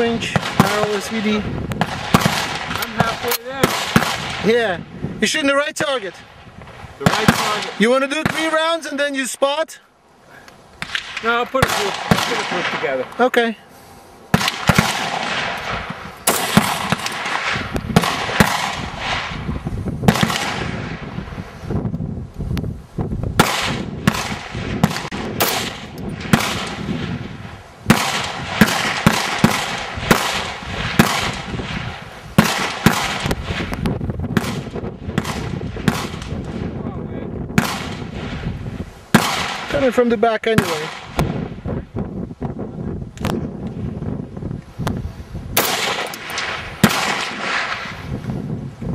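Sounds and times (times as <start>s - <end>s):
rifle shots echoing: 0.0s - 4.8s, 7.0s - 8.8s, 10.8s - 13.1s, 14.3s - 19.4s, 20.1s - 21.1s, 23.4s - 36.8s, 37.5s - 38.4s, 39.1s - 41.5s, 45.6s - 48.0s.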